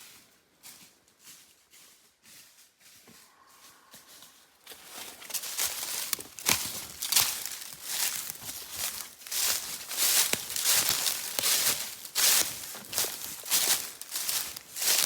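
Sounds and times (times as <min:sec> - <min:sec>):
crunching in dry leaves: 0:00.0 - 0:15.0.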